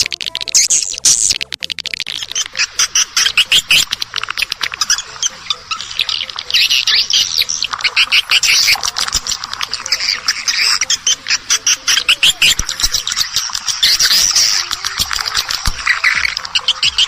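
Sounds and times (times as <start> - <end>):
swiftlets twittering: 0.0 - 17.0.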